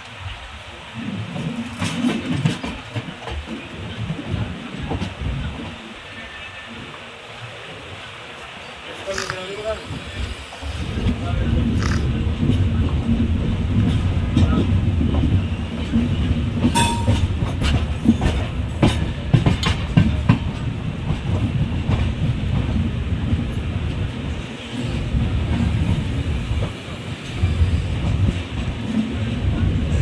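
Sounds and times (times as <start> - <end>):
train rumbling on rails: 0.0 - 30.0
wheels clacking over rail joints: 1.2 - 5.8, 10.6 - 23.4.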